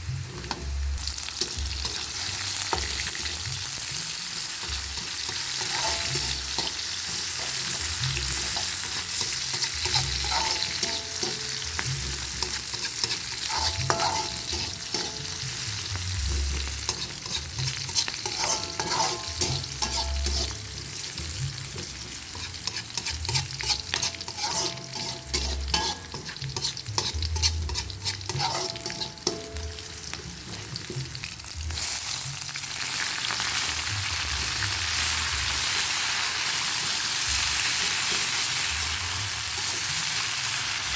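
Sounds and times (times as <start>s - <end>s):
stir-fry sizzling in hot oil: 0.0s - 40.9s
spatula scraping a pan: 1.4s - 31.2s.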